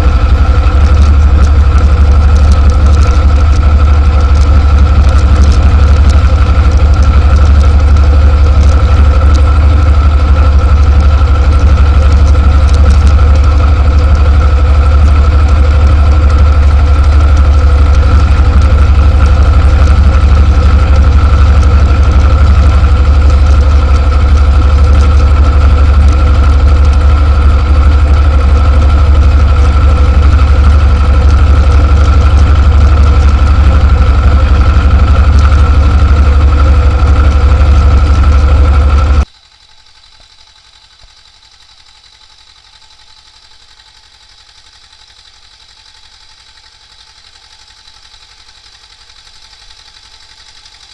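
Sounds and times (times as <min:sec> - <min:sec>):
diesel tractor engine running: 0:00.0 - 0:50.9.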